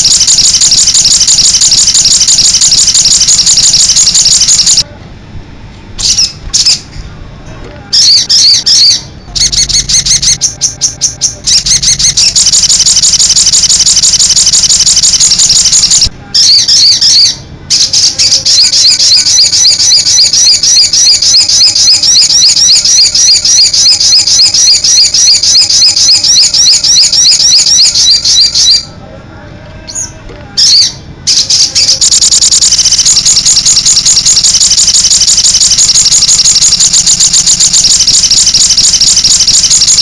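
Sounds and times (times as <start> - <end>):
bird singing high trills: 0.0 - 4.8, 8.0 - 28.9.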